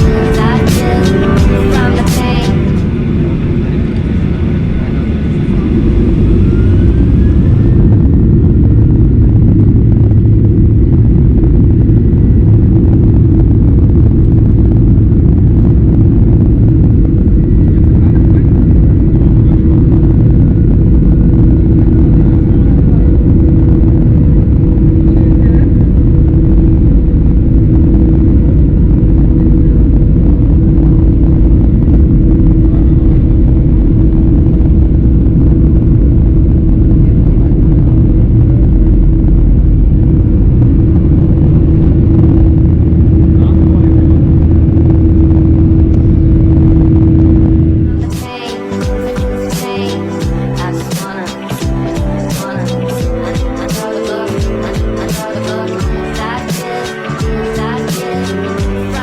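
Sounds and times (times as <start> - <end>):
jet engines rumbling in cabin: 0.0 - 59.0.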